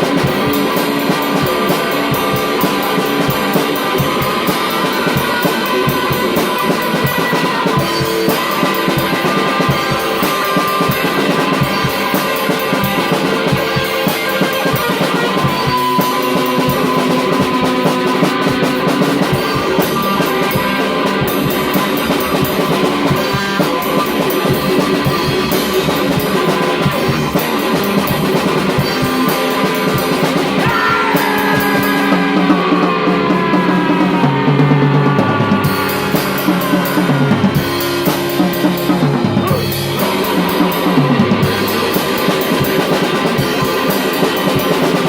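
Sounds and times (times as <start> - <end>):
distorted electric guitar: 0.0 - 45.0
drum and cymbal hits: 0.0 - 45.0
heavy rock band music: 0.0 - 45.0.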